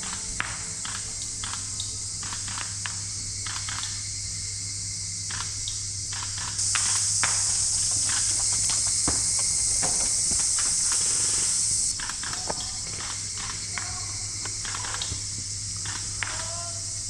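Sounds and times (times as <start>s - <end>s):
insects droning: 0.0s - 17.0s
rustling vegetation: 6.4s - 15.0s
footsteps in vegetation: 6.6s - 13.7s.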